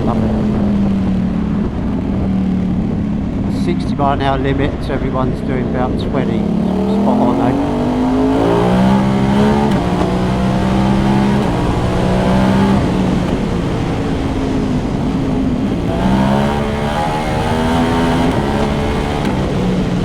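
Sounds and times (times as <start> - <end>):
motorcycle engine: 0.0 - 20.0
wind and road noise: 0.0 - 20.0.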